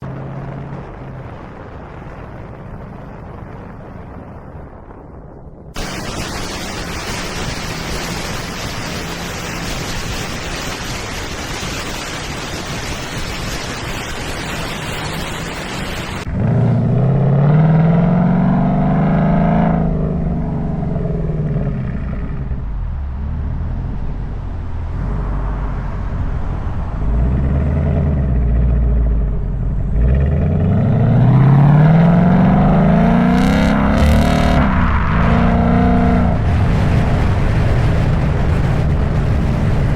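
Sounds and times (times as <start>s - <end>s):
wind noise on microphone: 0.0s - 39.9s
car engine accelerating: 14.3s - 39.9s.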